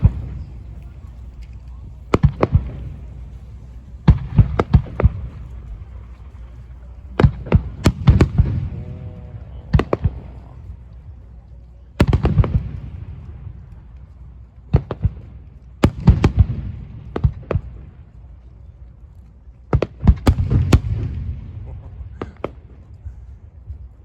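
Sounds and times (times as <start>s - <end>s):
fireworks bursting: 0.0s - 10.7s, 12.0s - 13.4s
low rumbling echo: 0.0s - 24.0s.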